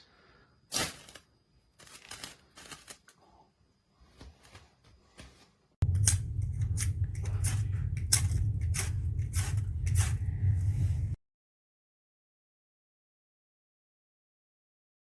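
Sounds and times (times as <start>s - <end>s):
low hum: 5.8s - 11.2s
striker scraping fire-steel rod: 5.8s - 11.2s.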